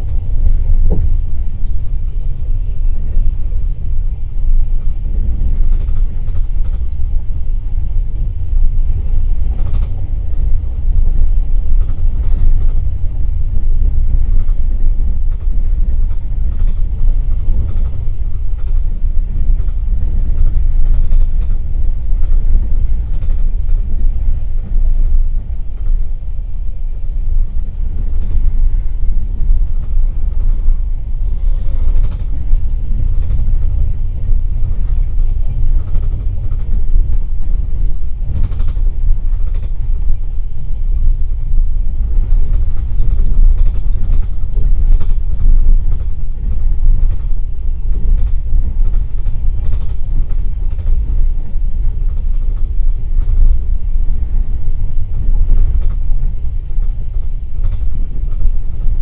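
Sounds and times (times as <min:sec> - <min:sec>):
train wheels rumbling on track: 0:00.0 - 0:59.0.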